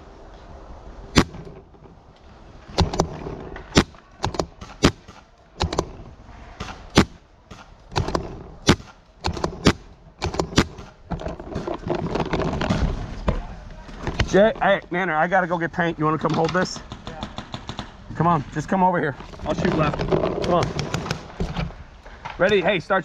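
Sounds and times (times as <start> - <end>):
paintball markers firing: 2.8 - 6.0, 6.6 - 11.0, 16.4 - 18.0.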